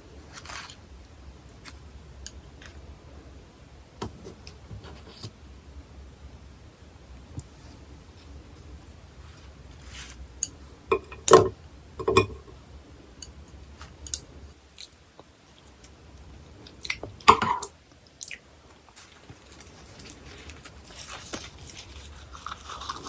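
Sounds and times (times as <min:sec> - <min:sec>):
person chewing with crunches: 0:18.1 - 0:23.0.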